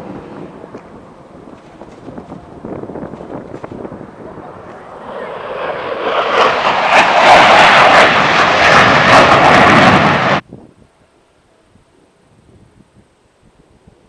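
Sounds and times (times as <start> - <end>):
jet fighters passing low: 0.0 - 10.5.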